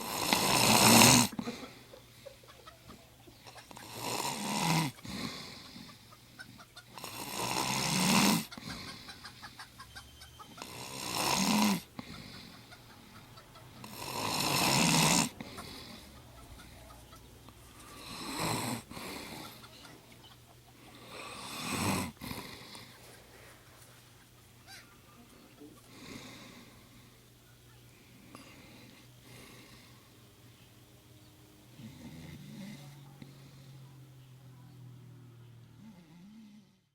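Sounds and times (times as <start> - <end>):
person snoring: 0.0 - 1.6, 3.7 - 6.0, 7.0 - 9.1, 10.6 - 12.6, 13.8 - 16.2, 17.9 - 19.6, 20.9 - 23.0, 31.7 - 33.8, 35.8 - 36.9
chickens clucking: 1.3 - 4.0, 5.0 - 7.1, 8.4 - 10.8, 12.0 - 14.0, 15.4 - 18.0, 19.0 - 21.4, 22.8 - 26.0.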